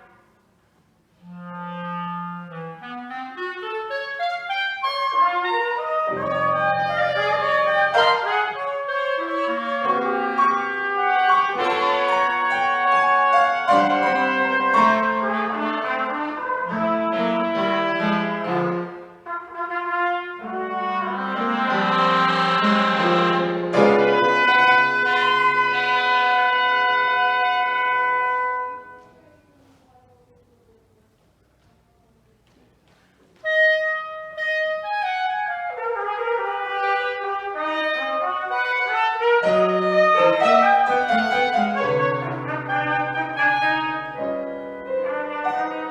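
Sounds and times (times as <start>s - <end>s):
trumpet long notes: 1.2s - 29.2s, 33.4s - 45.9s
clarinet long notes: 1.2s - 29.4s, 33.4s - 45.9s
sharp piano attacks: 4.2s - 29.4s, 37.4s - 45.9s.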